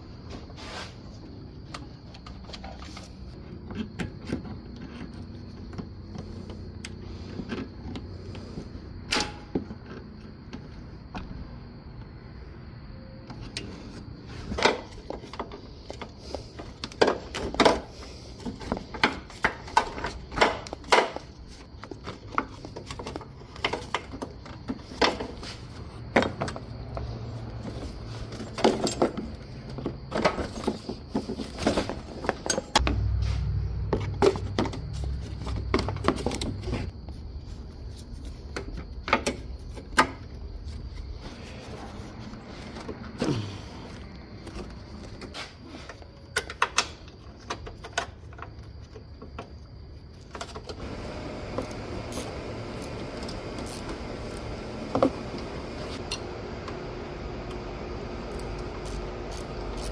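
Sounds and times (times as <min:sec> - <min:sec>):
hand tools clicking and knocking: 0:14.6 - 0:25.4, 0:27.6 - 0:32.9, 0:45.9 - 0:49.6
steady low hum: 0:32.6 - 0:38.4, 0:50.8 - 0:59.9.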